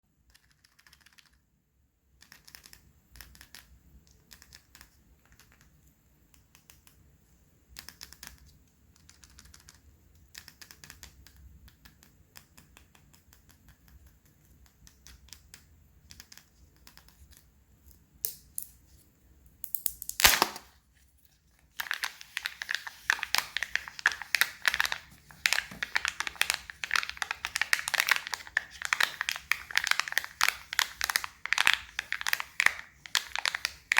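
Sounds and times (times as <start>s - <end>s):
foil wrapper crinkling: 20.2s - 33.9s.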